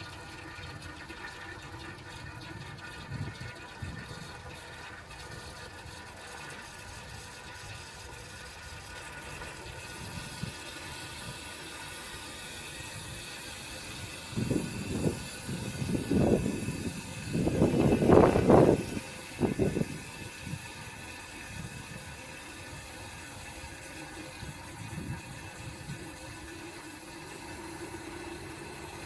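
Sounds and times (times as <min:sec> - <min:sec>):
toilet cistern refilling: 0:00.0 - 0:29.0.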